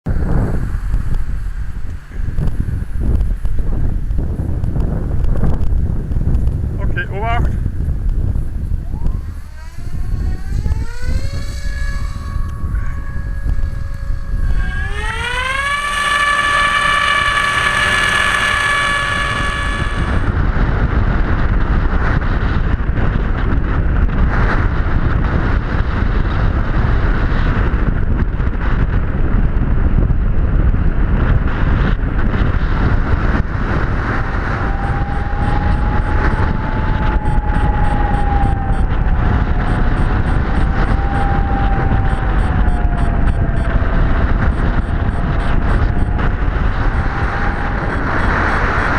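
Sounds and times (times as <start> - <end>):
rushing wind: 0.0 - 48.9
electric motor whine: 7.8 - 20.4, 33.4 - 48.9.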